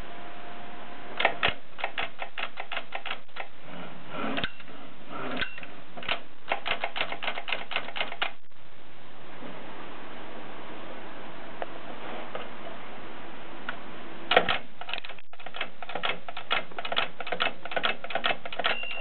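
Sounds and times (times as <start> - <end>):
typewriter clacking: 1.2 - 3.5, 5.4 - 8.4, 14.3 - 19.0.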